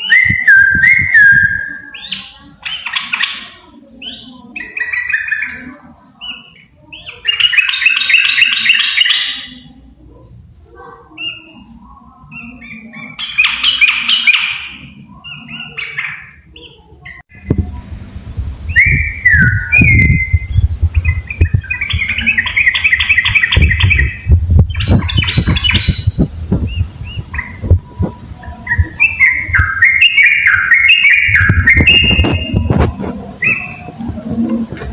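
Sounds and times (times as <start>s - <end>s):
birds singing bubbly phrases: 0.0s - 9.9s, 12.3s - 34.9s
low rumble with short knocks: 17.4s - 29.7s.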